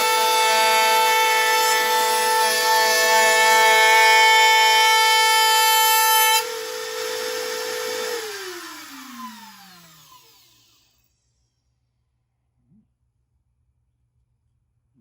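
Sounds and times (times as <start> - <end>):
router bit cutting board: 0.0 - 11.0
router winding down: 0.0 - 11.0.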